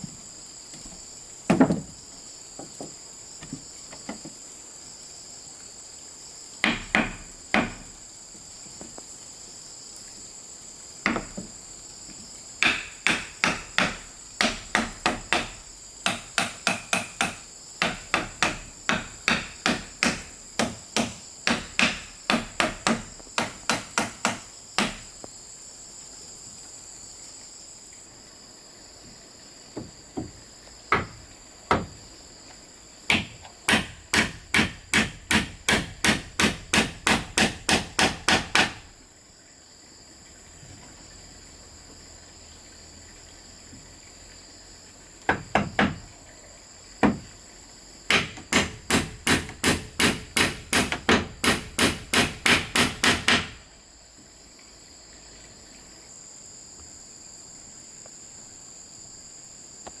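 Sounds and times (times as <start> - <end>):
insects chirring: 0.0 - 60.0
hand tool striking wood: 1.5 - 2.0, 6.6 - 8.0, 11.0 - 11.5, 12.6 - 25.3, 29.8 - 32.0, 33.1 - 38.9, 45.3 - 46.0, 47.0 - 47.3, 48.1 - 53.6.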